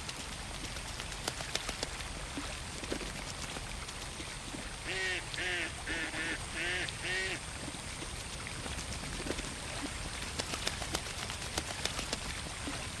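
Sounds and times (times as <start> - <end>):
splashes and drips on water: 0.0 - 13.0
duck quacking: 4.9 - 7.4.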